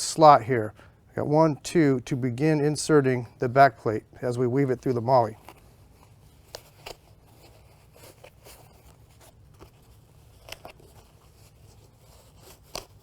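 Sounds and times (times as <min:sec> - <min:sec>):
faint scrapes and clicks of handling: 0:04.8 - 0:13.0.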